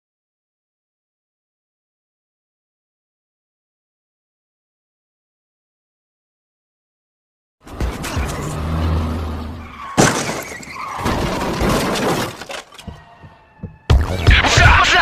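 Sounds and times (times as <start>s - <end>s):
crash with clatter: 10.0s - 12.8s
loud music: 13.9s - 15.0s.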